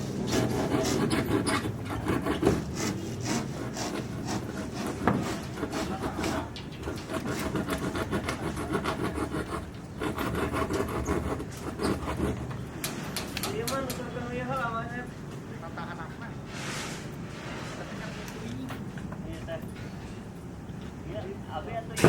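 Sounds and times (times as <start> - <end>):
hand tool rasping strokes: 0.0 - 12.6.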